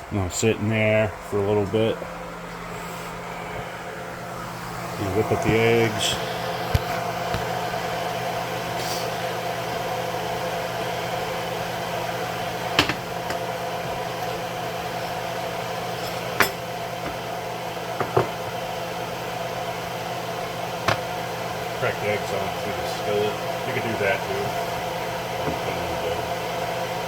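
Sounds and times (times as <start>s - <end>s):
vent fan humming: 0.0s - 27.0s.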